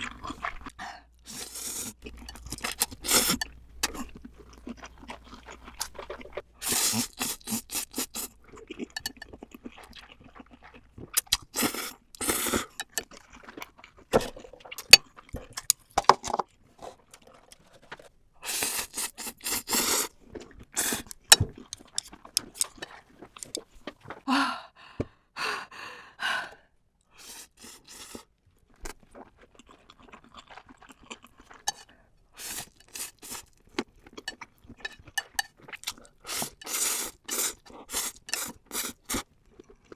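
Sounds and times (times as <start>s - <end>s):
chewing and crunching: 0.0s - 24.3s, 27.8s - 39.9s
noodle slurping: 1.3s - 13.4s, 18.4s - 20.1s, 20.7s - 24.2s, 31.6s - 33.6s, 34.8s - 39.3s.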